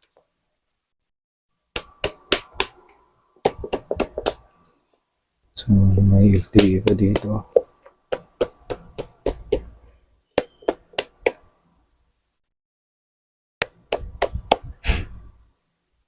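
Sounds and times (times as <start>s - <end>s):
tablet tapping on hard surface: 3.4s - 4.4s, 6.8s - 9.8s, 10.4s - 11.4s, 13.6s - 14.7s.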